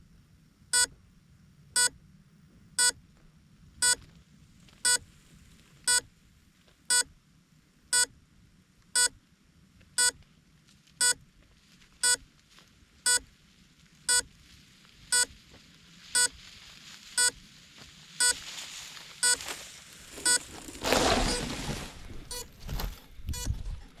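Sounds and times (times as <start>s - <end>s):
short electronic beeps: 4.8s - 5.0s, 9.0s - 9.2s, 12.0s - 12.2s, 15.1s - 15.3s, 18.2s - 18.4s, 19.2s - 19.4s, 20.2s - 20.4s, 23.3s - 23.6s
rustling: 13.4s - 24.0s.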